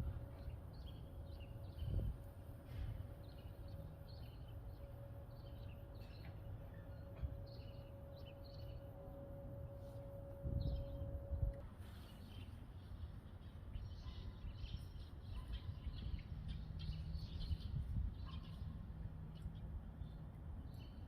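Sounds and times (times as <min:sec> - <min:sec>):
faint steady hum: 0:00.0 - 0:14.8
small birds chirping: 0:12.0 - 0:21.0.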